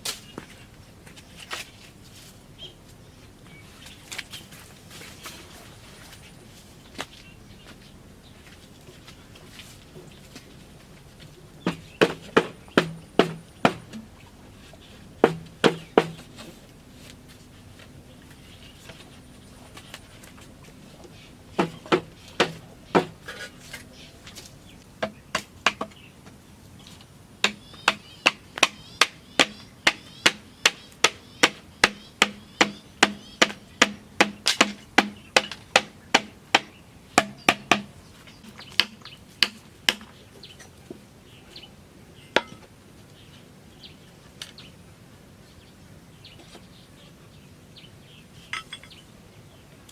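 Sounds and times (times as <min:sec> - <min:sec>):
hand tool striking bamboo: 0:11.6 - 0:14.1, 0:15.2 - 0:16.6, 0:21.6 - 0:26.0, 0:27.4 - 0:37.9, 0:38.6 - 0:40.1.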